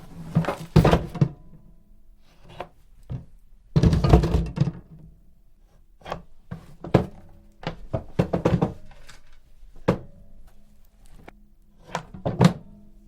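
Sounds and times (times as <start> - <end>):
wooden coffin knocks: 3.2 - 4.9, 6.8 - 8.9.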